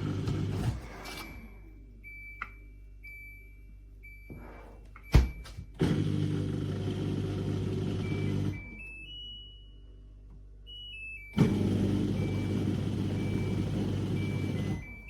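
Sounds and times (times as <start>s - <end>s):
dishwasher motor and water rushing: 0.0s - 1.2s, 11.4s - 14.9s
dishwasher humming: 0.0s - 2.2s, 4.0s - 8.8s, 11.2s - 15.0s.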